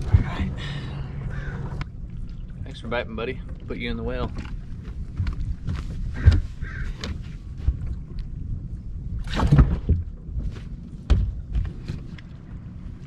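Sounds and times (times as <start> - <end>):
thuds and knocks on boat deck: 0.0 - 0.6, 5.0 - 7.9, 9.3 - 12.0
low steady rumble: 0.0 - 13.0.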